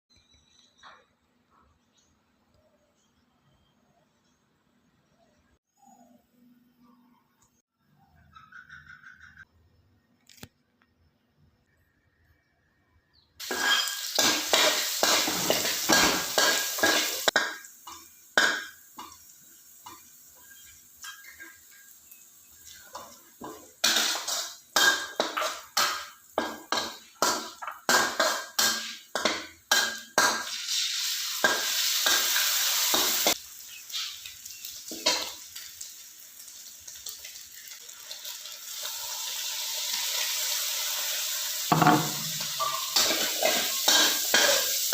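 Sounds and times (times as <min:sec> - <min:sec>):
spatula scraping and knocking pan: 0:13.4 - 0:19.2, 0:41.7 - 0:44.8
rice sizzling in a pan: 0:13.4 - 0:44.9.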